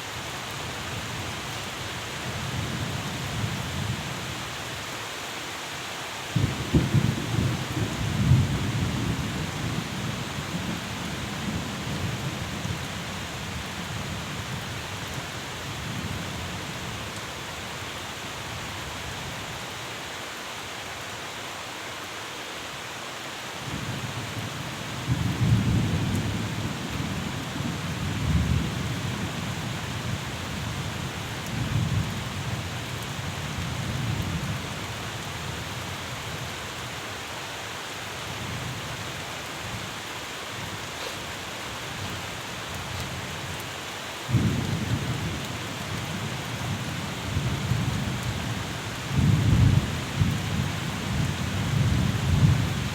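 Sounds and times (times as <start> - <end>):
rain hissing: 36.8 - 52.9.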